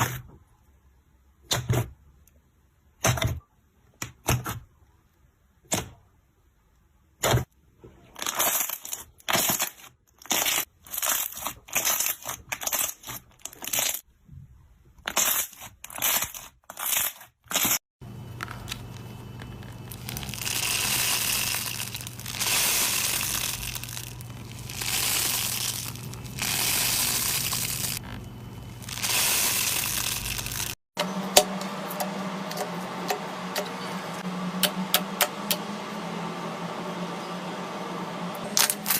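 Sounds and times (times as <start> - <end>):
slime crackling and crunching: 8.1 - 14.1, 15.0 - 17.8, 18.4 - 30.8, 38.5 - 38.9
steady low hum: 18.0 - 38.5
slime squishing: 18.4 - 30.8.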